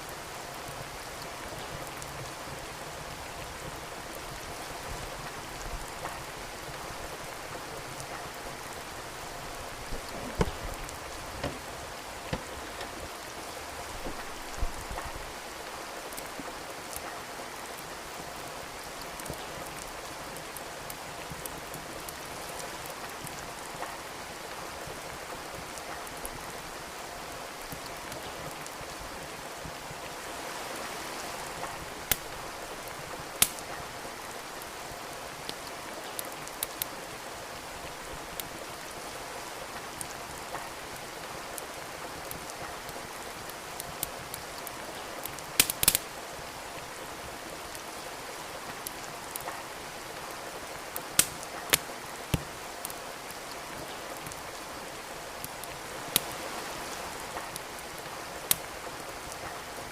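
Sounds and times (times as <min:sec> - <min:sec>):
steady rain: 0:00.0 - 0:59.9
wood fire crackling: 0:00.0 - 0:59.9
burning logs popping: 0:09.6 - 0:15.2, 0:31.6 - 0:33.9, 0:43.4 - 0:46.1, 0:51.0 - 0:53.0.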